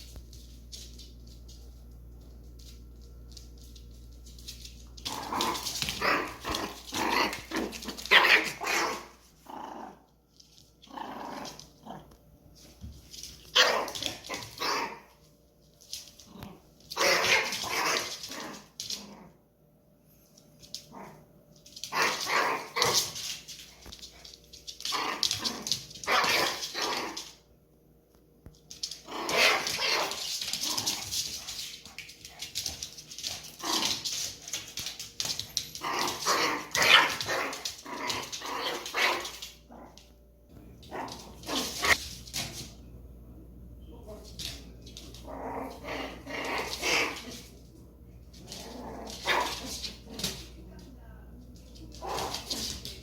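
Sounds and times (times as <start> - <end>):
low steady hum: 0.0 - 53.0
dog barking and growling: 5.0 - 10.1, 13.4 - 15.2, 16.2 - 19.4, 20.8 - 23.4, 24.8 - 27.4, 28.9 - 31.8, 32.4 - 40.1, 40.7 - 42.0, 44.4 - 47.5, 48.3 - 50.5.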